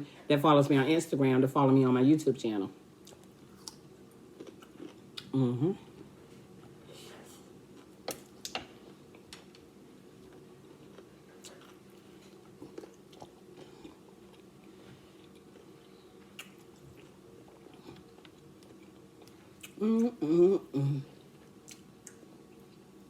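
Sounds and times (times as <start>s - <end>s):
faint steady hum: 0.0s - 23.0s
person chewing food: 3.0s - 6.8s, 7.7s - 20.2s, 21.2s - 22.9s.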